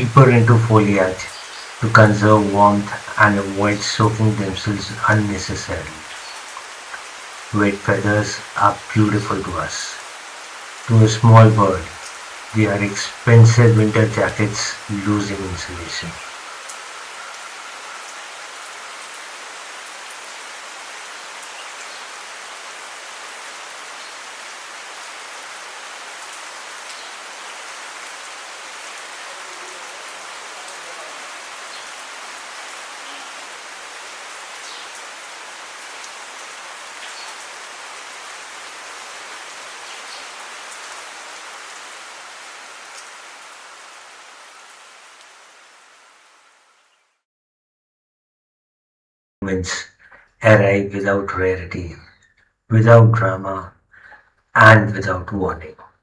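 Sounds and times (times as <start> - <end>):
raindrop ticks: 0.0 - 10.1, 10.7 - 19.2
heavy rain pouring: 0.0 - 46.9.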